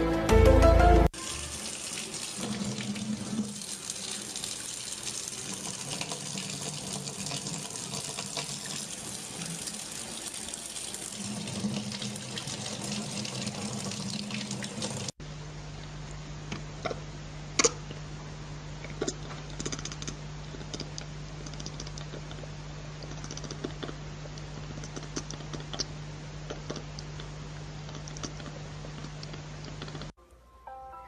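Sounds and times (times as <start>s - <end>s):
background music: 0.0s - 1.7s, 30.2s - 31.0s.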